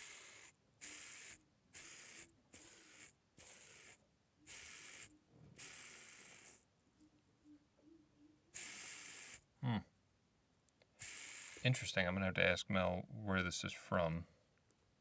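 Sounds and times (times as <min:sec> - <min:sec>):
fidget spinner whirring: 0:00.0 - 0:06.6, 0:08.6 - 0:09.4, 0:11.0 - 0:11.8.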